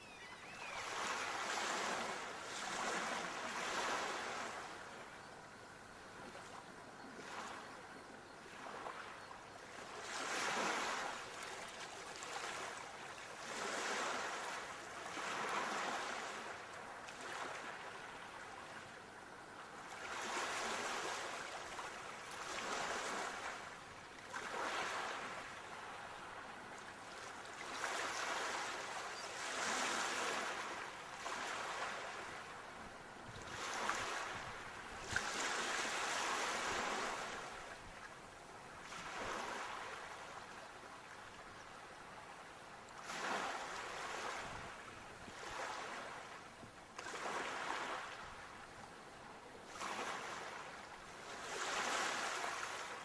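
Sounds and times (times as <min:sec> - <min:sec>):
sea waves breaking: 0:33.5 - 0:37.6, 0:45.4 - 0:46.3, 0:47.0 - 0:48.4, 0:49.7 - 0:53.0.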